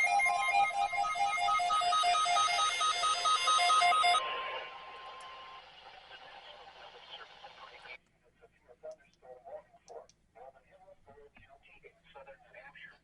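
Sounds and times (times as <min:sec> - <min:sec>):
steady warning tone: 0:00.0 - 0:08.0
weather alert radio beeping: 0:00.0 - 0:08.0
faint radio hiss: 0:04.0 - 0:13.0.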